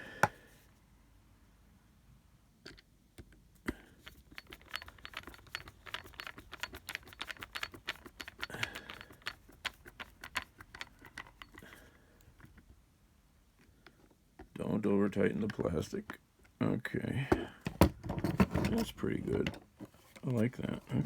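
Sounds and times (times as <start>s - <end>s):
screwdriver and screws clicking: 4.1s - 11.8s.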